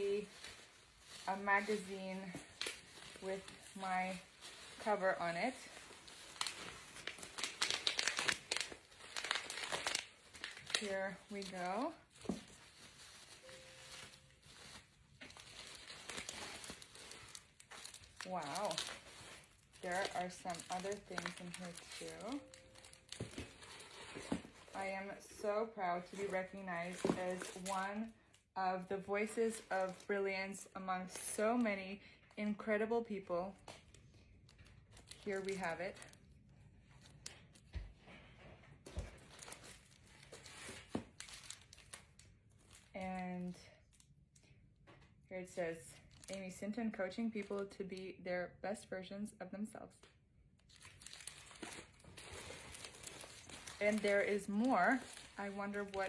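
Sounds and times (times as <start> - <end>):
packaging crinkling: 0.2 - 28.4, 33.6 - 37.7, 38.9 - 43.0, 46.0 - 46.4, 50.6 - 56.0.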